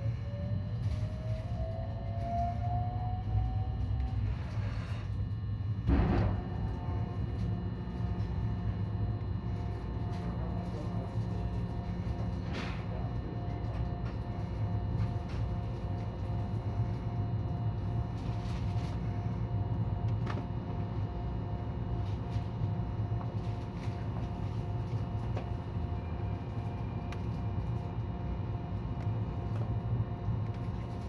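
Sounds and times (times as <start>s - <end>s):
faint pulsing tone: 0.0s - 12.3s.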